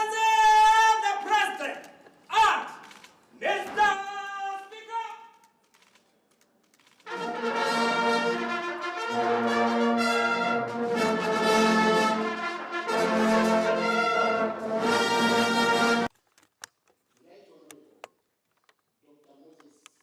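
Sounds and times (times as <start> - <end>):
brass ensemble playing chords: 7.1 - 16.1.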